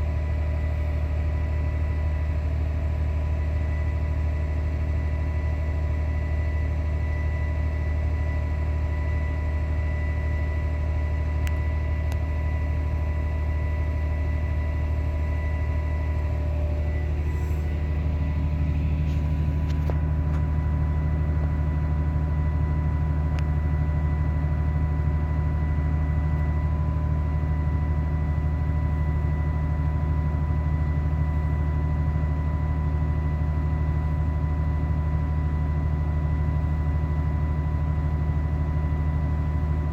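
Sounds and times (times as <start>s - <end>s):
tractor engine drone: 0.0s - 39.9s
high whine: 4.7s - 33.1s.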